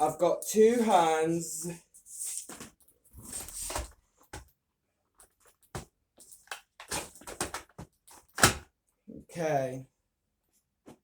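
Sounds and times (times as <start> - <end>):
vacuum cleaners being handled: 5.2 - 8.6.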